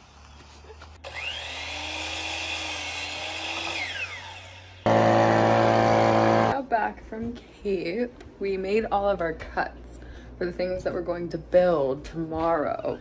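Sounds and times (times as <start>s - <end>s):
electric saw cutting wood: 1.0s - 6.6s
loud steady hum: 4.9s - 6.6s.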